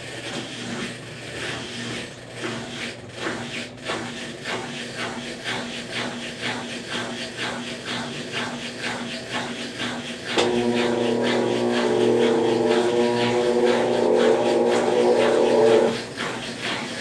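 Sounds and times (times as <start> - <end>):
washing machine swishing water: 10.2 - 17.0
motor hum: 10.4 - 16.5.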